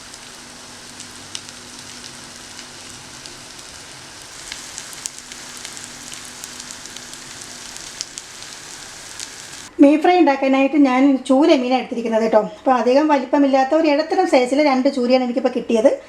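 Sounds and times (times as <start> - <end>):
fish sizzling in hot oil: 0.0 - 9.7
oil crackling and popping: 0.0 - 9.7.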